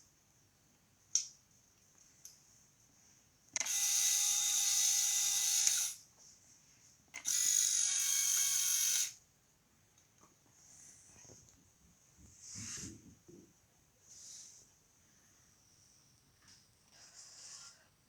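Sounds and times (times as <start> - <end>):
rc car motor whining: 3.6 - 6.0, 7.2 - 9.2.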